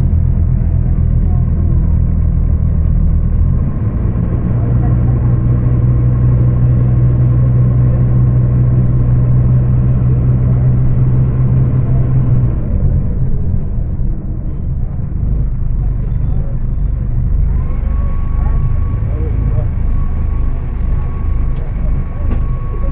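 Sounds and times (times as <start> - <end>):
diesel bus engine running hard: 0.0 - 22.9
faint high squeal: 14.3 - 22.9.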